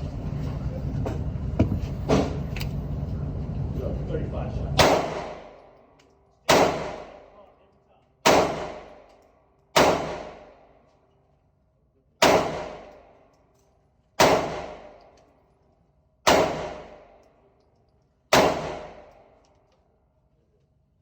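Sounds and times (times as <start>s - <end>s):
gunshots: 4.8s - 5.7s, 6.5s - 7.4s, 8.2s - 9.1s, 9.7s - 10.7s, 12.2s - 13.1s, 14.2s - 15.1s, 16.3s - 17.2s, 18.3s - 19.3s.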